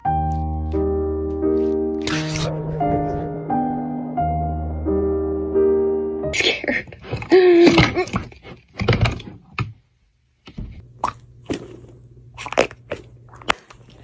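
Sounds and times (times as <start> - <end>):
low hum: 2.0 - 6.3.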